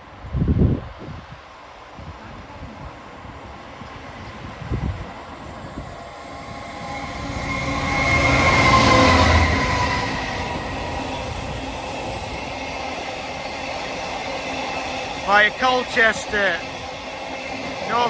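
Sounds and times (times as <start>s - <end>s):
locomotive passing with whine: 1.7s - 18.0s.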